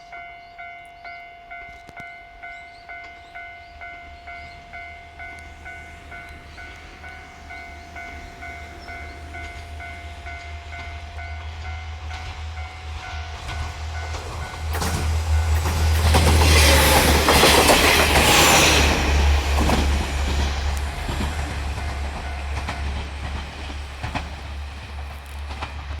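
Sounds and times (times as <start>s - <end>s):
crossing warning bell ringing: 0.0s - 25.6s
train wheels clattering over rail joints: 13.3s - 26.0s.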